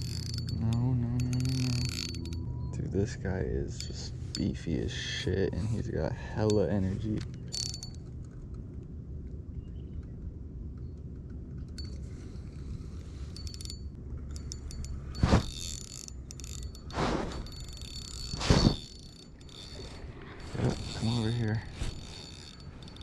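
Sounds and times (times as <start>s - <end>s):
fishing reel ticking: 0.0s - 2.5s, 3.7s - 8.0s, 11.7s - 23.0s.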